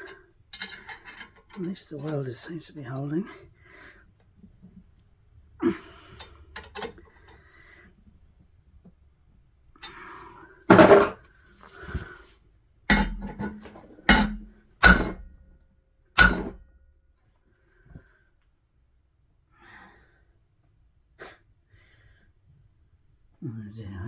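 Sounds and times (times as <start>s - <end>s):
hammer striking metal: 12.9s - 15.4s, 16.2s - 16.6s.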